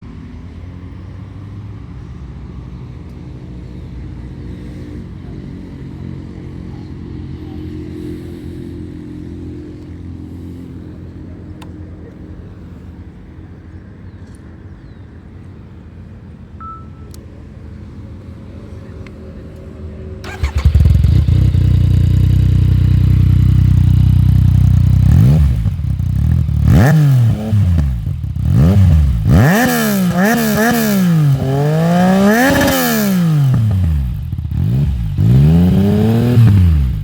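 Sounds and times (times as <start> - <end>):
motorcycle engine idling: 20.2 - 37.0.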